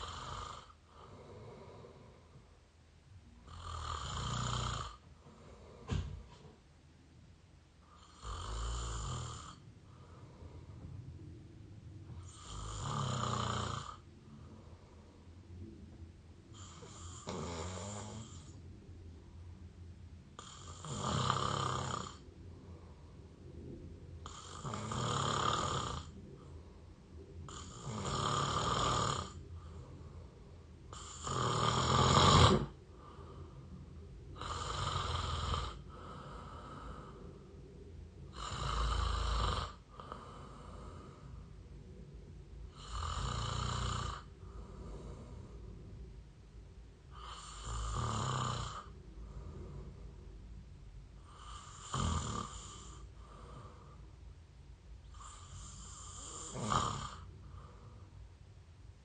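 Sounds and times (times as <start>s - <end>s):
person mouth-snoring: 0.0s - 1.2s, 3.5s - 5.0s, 7.9s - 9.6s, 12.2s - 14.0s, 16.5s - 18.6s, 20.4s - 22.2s, 24.2s - 26.1s, 27.5s - 29.4s, 30.9s - 33.2s, 34.4s - 37.2s, 38.3s - 41.2s, 42.7s - 45.4s, 47.1s - 49.6s, 51.2s - 54.0s, 55.1s - 57.3s
quiet breaths: 0.0s - 59.0s.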